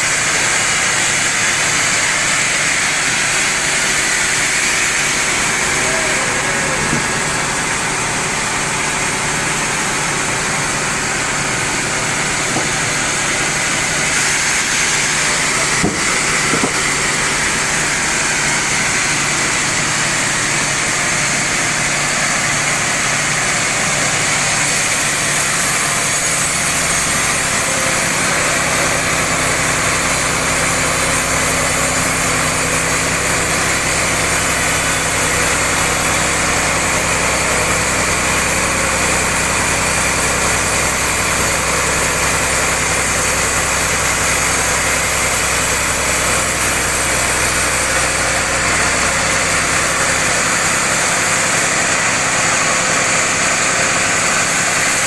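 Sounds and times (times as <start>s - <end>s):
high hiss of machinery: 0.0s - 55.0s
motor hum: 0.0s - 55.0s
deep engine hum: 3.8s - 39.2s.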